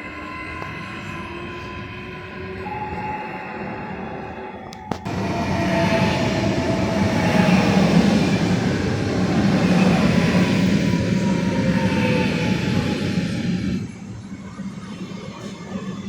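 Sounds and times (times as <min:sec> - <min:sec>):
train rumbling by: 0:04.8 - 0:16.0.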